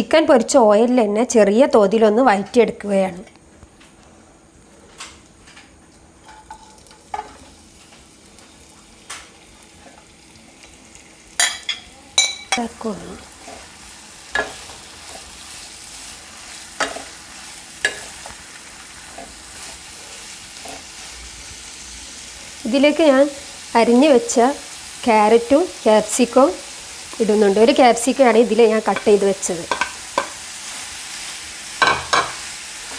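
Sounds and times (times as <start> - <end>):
cabbage sizzling in oil: 6.1 - 32.9
spoon clinking against pan: 11.4 - 12.6.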